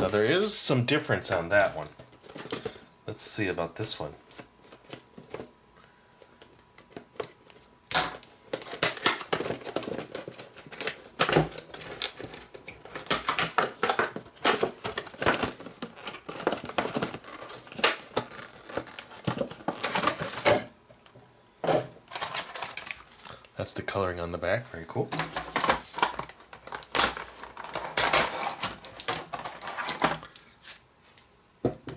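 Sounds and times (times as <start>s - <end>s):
plastic wrapping crinkling: 8.5s - 20.5s, 22.1s - 23.4s.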